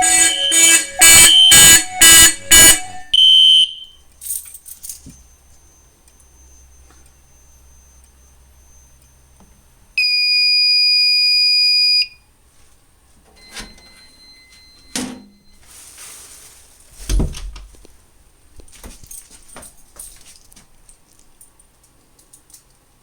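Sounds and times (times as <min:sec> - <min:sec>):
fire alarm high-pitched tone: 0:00.0 - 0:04.1, 0:10.0 - 0:12.2
handling knocks and clunks: 0:16.9 - 0:17.9.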